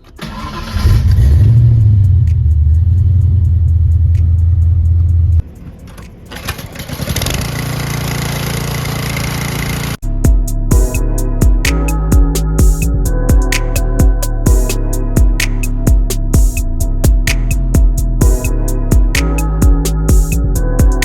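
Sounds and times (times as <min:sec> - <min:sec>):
car engine starting and revving: 0:00.0 - 0:10.0.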